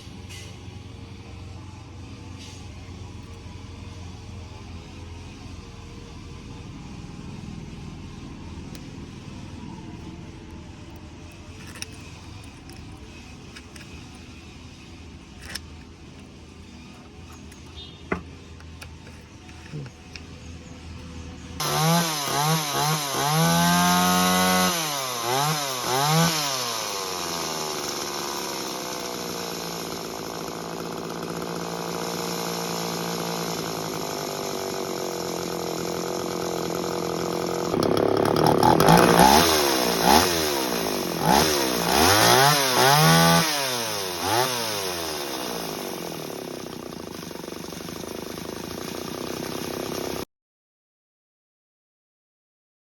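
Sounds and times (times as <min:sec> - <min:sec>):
small two-stroke engine revving: 0:10.8 - 0:20.8, 0:21.6 - 0:50.2.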